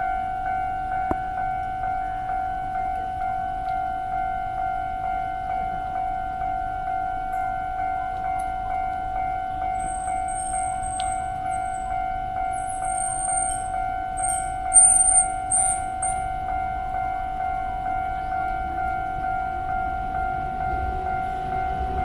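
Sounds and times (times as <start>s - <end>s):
level-crossing warning bell: 0.0s - 22.0s
thin high-pitched squeal: 12.6s - 16.2s.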